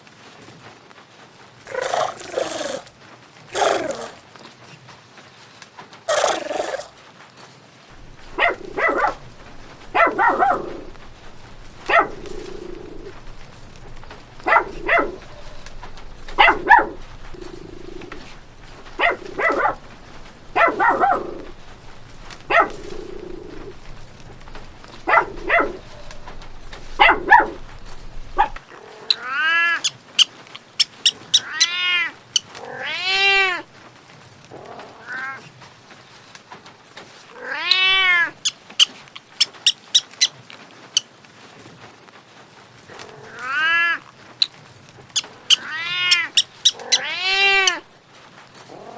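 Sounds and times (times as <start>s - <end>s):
cat meowing: 1.7s - 2.9s, 8.0s - 28.6s, 31.3s - 33.6s, 37.4s - 38.4s, 43.3s - 44.0s, 45.2s - 47.9s
dog barking: 1.7s - 2.9s, 3.6s - 4.2s, 8.0s - 28.6s, 45.5s - 47.8s.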